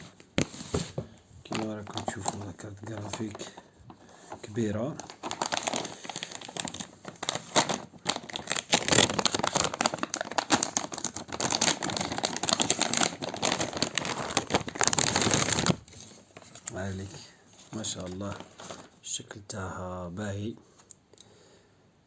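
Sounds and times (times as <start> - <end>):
plastic packaging crinkling: 0.0 - 19.0.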